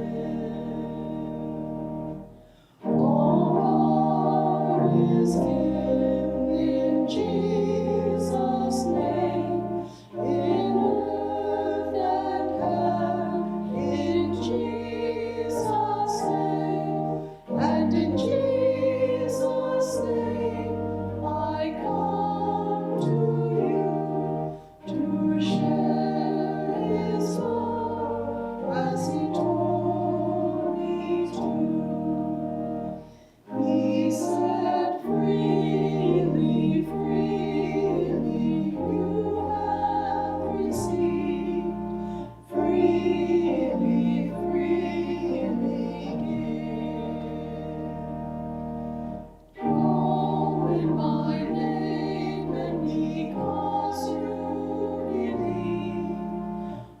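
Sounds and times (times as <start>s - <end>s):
choir singing a hymn: 0.0s - 57.0s
singers breathing: 2.3s - 2.9s, 9.8s - 10.2s, 33.0s - 33.5s, 41.9s - 42.4s, 56.5s - 57.0s.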